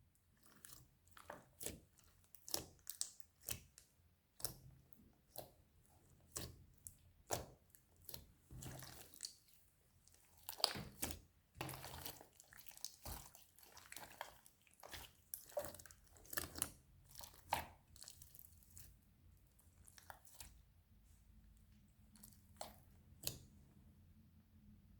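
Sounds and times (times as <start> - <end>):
slime squished by hand: 6.2 - 20.7, 21.5 - 23.6.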